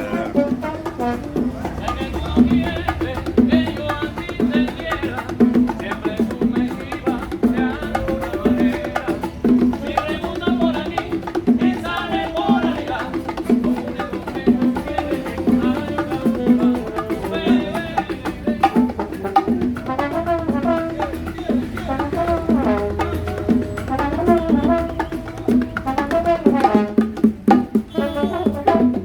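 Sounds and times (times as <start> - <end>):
brass horns playing melody: 0.0 - 1.7, 15.9 - 18.1, 19.8 - 29.0
salsa percussion: 0.0 - 29.0.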